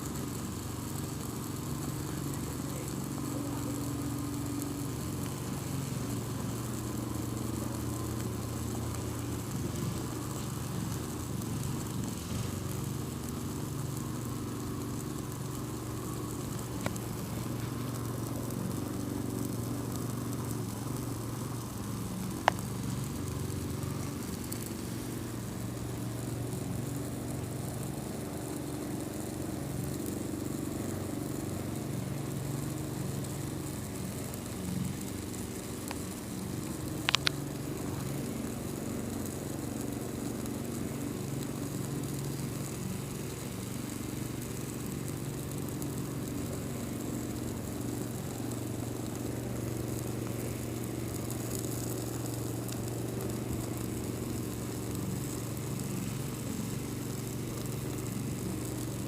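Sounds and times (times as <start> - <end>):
steady low hum: 0.0 - 59.0
sharp clicks or pops: 37.0 - 37.4.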